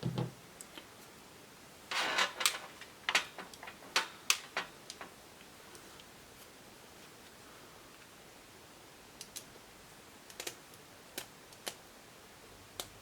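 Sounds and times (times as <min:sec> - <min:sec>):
laptop parts clicking and knocking: 0:02.4 - 0:05.1.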